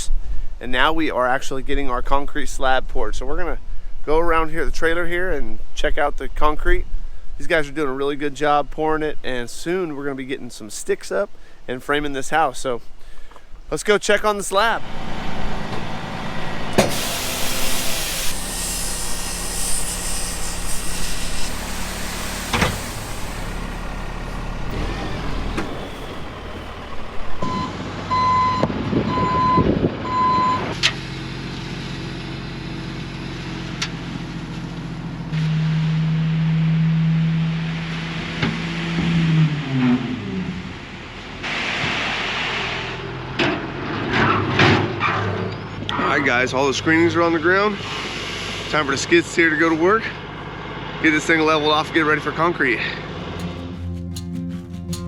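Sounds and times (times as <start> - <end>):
diesel truck engine running: 14.5 - 44.3, 45.7 - 55.0
backup alarm beeping: 21.6 - 30.8.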